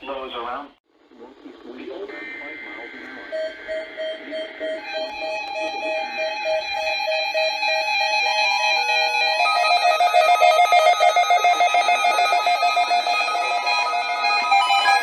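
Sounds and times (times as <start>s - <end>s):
electronic alert beeps: 9.5s - 15.0s.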